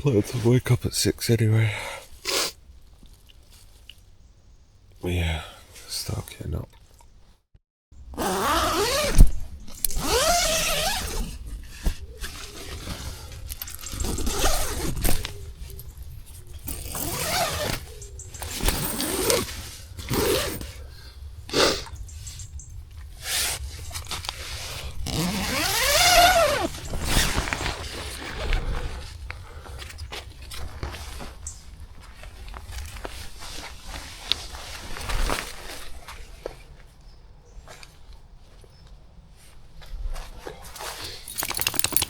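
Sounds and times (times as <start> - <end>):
nylon fabric rustling: 8.2 - 9.3, 9.9 - 15.3, 16.7 - 17.8, 25.1 - 29.0.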